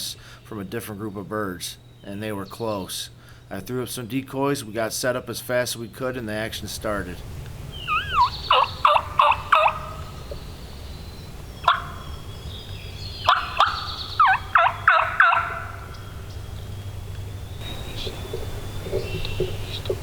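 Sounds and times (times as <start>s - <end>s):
turkey yelping: 7.7s - 10.9s, 11.6s - 16.7s.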